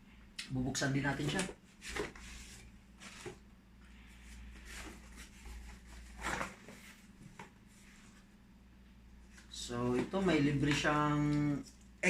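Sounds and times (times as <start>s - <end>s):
faint steady hum: 0.0s - 12.0s
packaging rustling and scraping: 1.2s - 3.4s, 4.1s - 8.2s.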